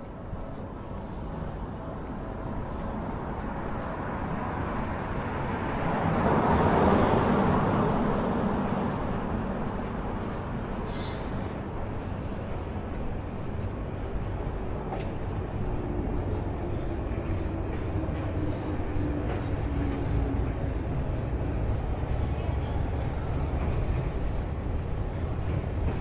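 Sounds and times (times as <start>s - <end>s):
urban background noise: 0.0s - 26.0s.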